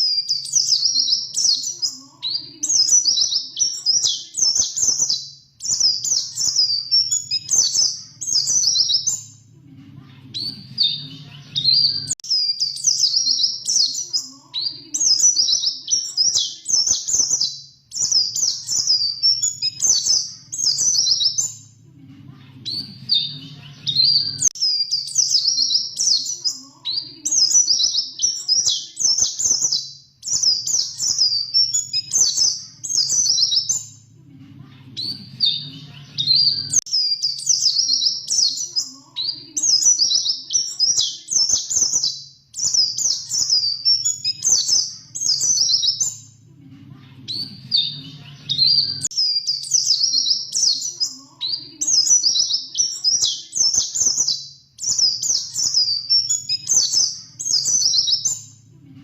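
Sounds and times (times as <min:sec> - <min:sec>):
bird twittering song: 0:00.0 - 0:09.5, 0:10.3 - 0:21.8, 0:22.6 - 0:34.1, 0:35.0 - 0:46.4, 0:47.3 - 0:58.6.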